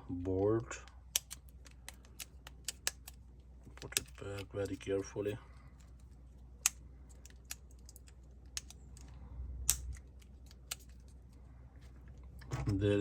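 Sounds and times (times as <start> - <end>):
sharp clicks of small plastic parts: 0.8 - 4.8, 5.8 - 11.3.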